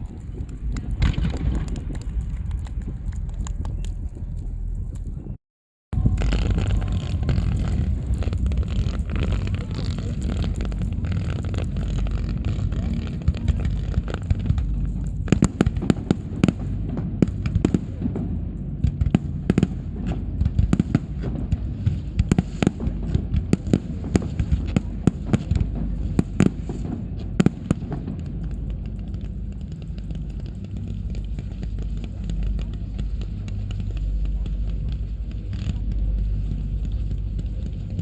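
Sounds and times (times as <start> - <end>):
fireworks cracks and bangs: 0.0 - 5.2, 5.9 - 38.0
low rumble: 0.0 - 38.0.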